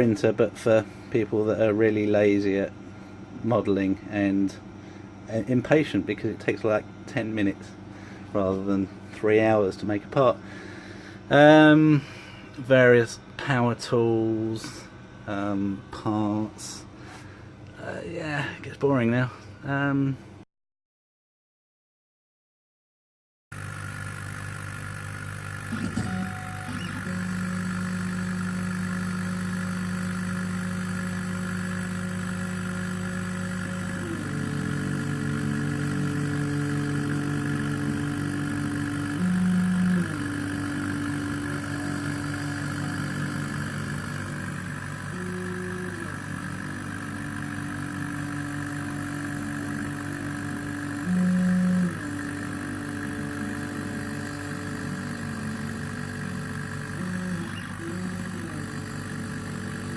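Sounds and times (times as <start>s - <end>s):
workshop machine hum: 0.0s - 20.4s, 23.5s - 59.9s
motor whine: 23.6s - 59.9s.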